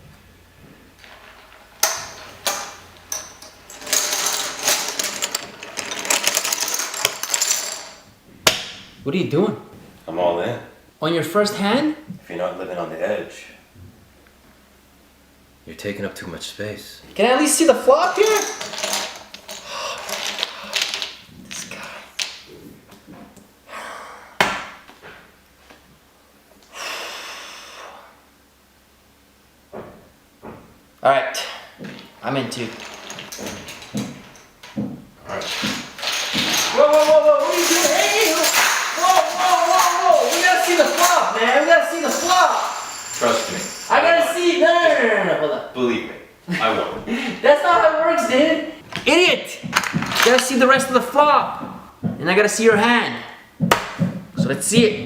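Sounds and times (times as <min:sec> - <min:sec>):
chips and cards clattering: 0:01.0 - 0:08.0, 0:18.0 - 0:22.5, 0:31.8 - 0:44.1.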